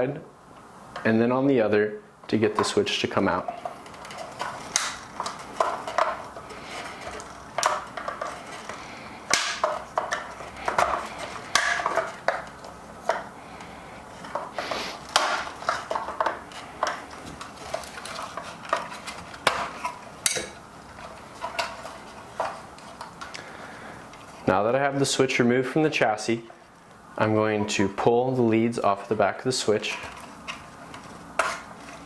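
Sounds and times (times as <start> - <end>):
screwdriver clicking and scraping metal: 29.8 - 32.0.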